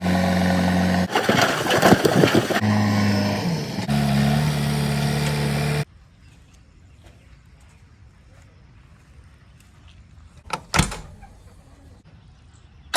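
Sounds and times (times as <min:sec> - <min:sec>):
diesel engine humming: 0:00.0 - 0:05.9.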